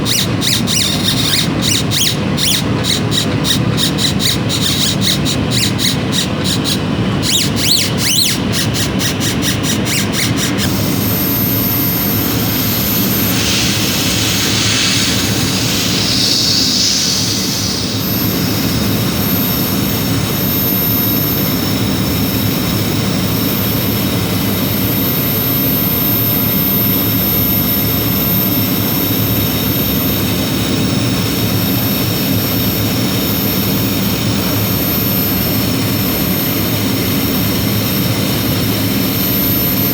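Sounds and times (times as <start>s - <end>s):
rapid ticking: 0.0s - 10.7s
machine whooshing whir: 0.0s - 20.5s.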